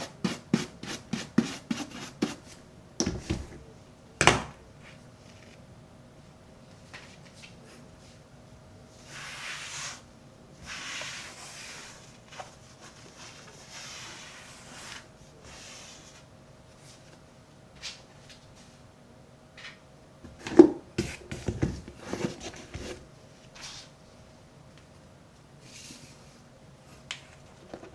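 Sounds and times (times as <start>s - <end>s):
handling knocks and thumps: 3.0s - 3.6s.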